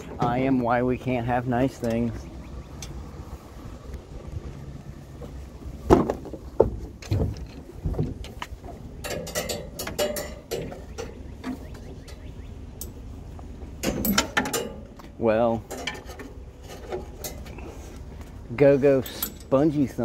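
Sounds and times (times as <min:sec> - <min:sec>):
metal knocks and clanks: 0:05.2 - 0:12.2, 0:13.6 - 0:17.8.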